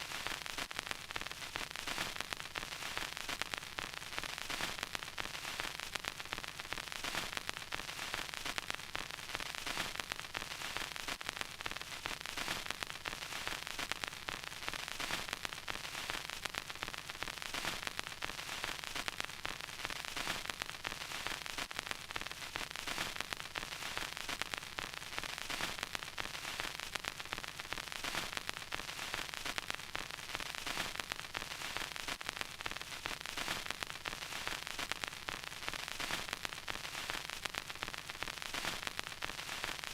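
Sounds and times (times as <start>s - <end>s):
vinyl record crackle: 0.0s - 39.9s.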